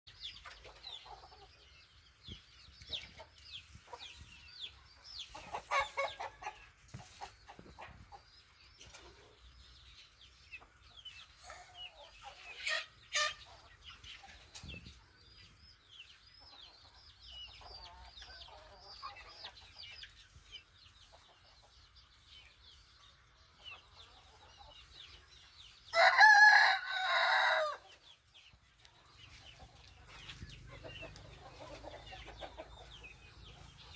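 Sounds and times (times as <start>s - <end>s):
chickens clucking: 0.1s - 33.9s
rooster crowing: 26.0s - 27.8s.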